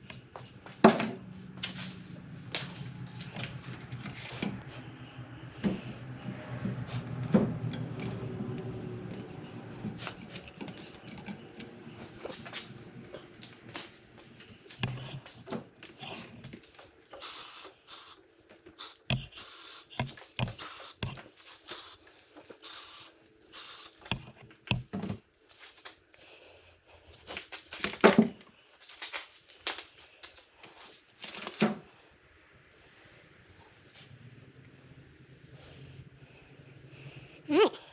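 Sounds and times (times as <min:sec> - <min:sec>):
spray gun air hiss: 0:22.6 - 0:24.0.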